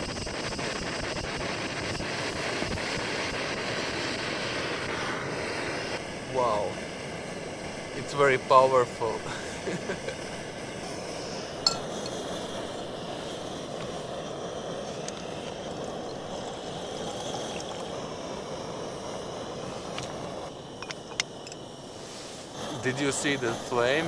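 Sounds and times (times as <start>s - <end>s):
gas stove burner roaring: 0.0s - 24.0s
sharp metallic clink: 11.7s - 12.2s.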